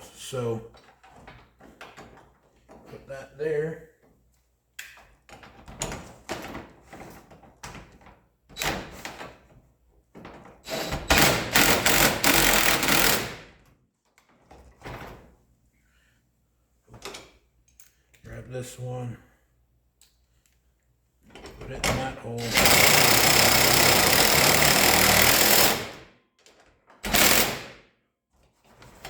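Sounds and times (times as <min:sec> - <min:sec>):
knocks and clatter of metal parts: 0:00.7 - 0:03.1, 0:05.0 - 0:15.3, 0:21.2 - 0:27.7
power driver driving screw: 0:10.7 - 0:13.4, 0:22.4 - 0:26.0, 0:27.1 - 0:27.7.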